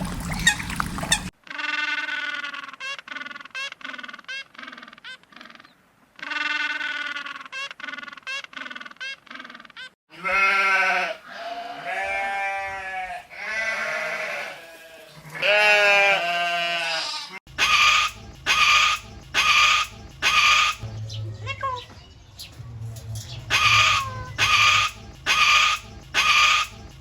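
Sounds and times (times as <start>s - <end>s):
short harsh animal calls: 15.4s - 20.9s, 23.5s - 27.0s
long wavering animal calls: 23.4s - 27.0s.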